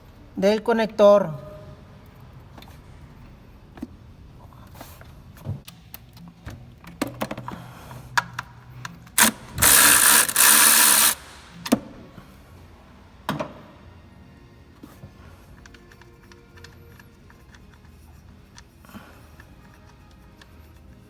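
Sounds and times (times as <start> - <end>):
ratchet wrench ratcheting: 9.2 - 11.7.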